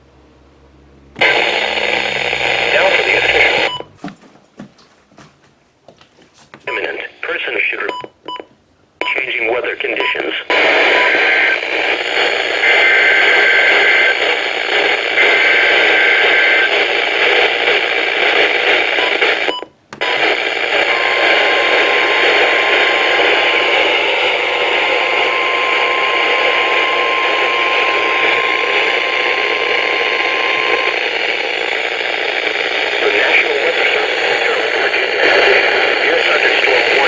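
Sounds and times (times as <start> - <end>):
radio signal hiss: 1.2 - 3.7, 6.7 - 8.0, 9.1 - 37.0
steady alarm tone: 20.2 - 32.4.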